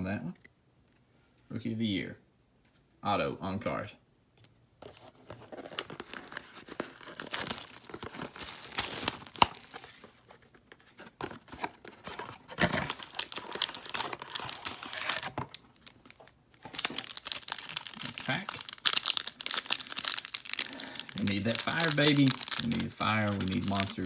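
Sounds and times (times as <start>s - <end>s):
card packaging torn and crinkled: 4.9s - 24.0s.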